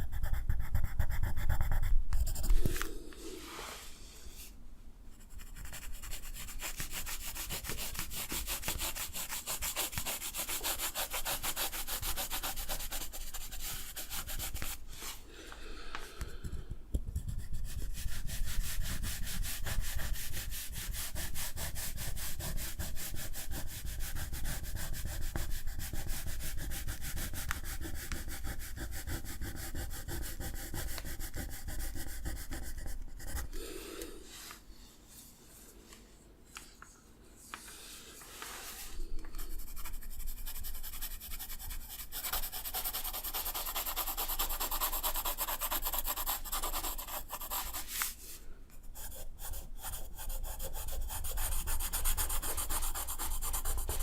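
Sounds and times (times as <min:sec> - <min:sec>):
drawing tool rubbing on paper: 0:05.2 - 0:15.2, 0:17.3 - 0:33.6, 0:38.4 - 0:48.1, 0:49.0 - 0:54.0.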